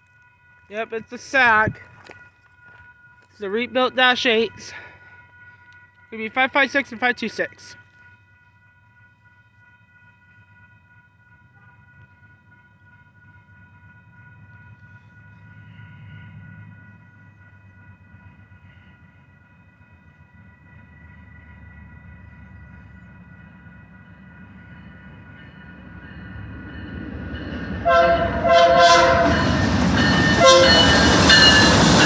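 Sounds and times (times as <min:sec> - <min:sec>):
crossing signal ringing: 0:00.0 - 0:19.4, 0:20.8 - 0:32.0
diesel locomotive rumble: 0:14.0 - 0:32.0
locomotive air horn blasts: 0:27.8 - 0:29.5, 0:30.4 - 0:30.9.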